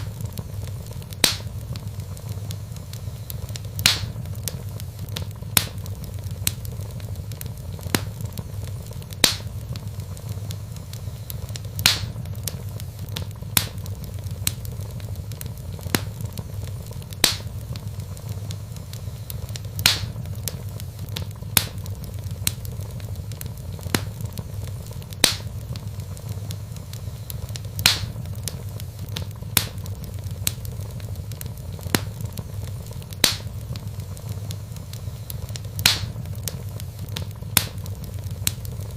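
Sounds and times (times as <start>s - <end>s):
fire crackling and popping: 0.0s - 38.9s
low rumble of flames: 0.0s - 38.9s.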